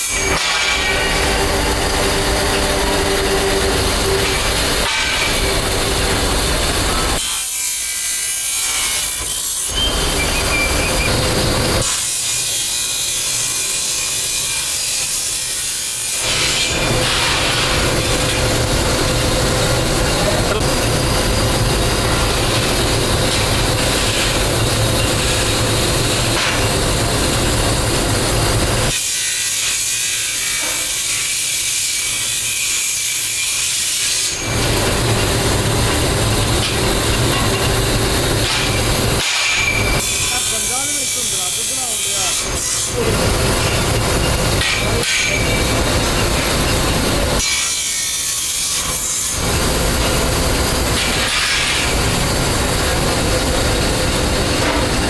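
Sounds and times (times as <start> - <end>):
metalworking machine rasping: 0.0 - 55.0.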